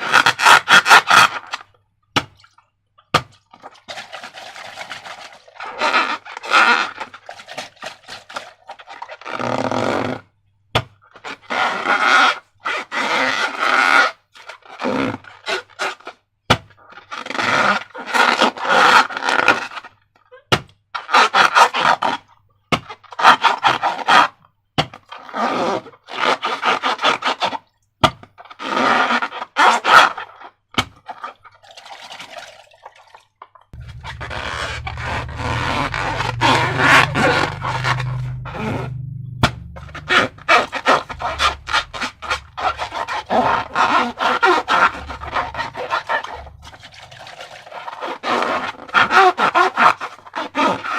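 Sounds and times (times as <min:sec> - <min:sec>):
low rumble: 0:33.8 - 0:47.5.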